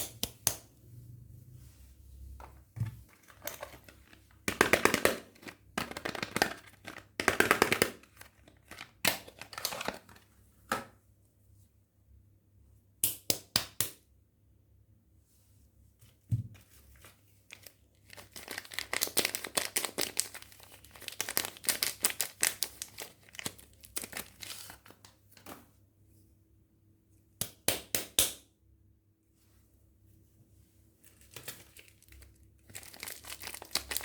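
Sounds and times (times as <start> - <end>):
wrappers crinkling and tearing: 3.4 - 10.2, 17.5 - 24.9, 31.0 - 34.0.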